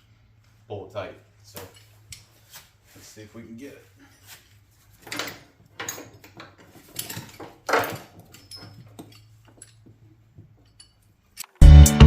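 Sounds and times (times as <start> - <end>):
chain clinking and rattling: 5.0 - 11.4.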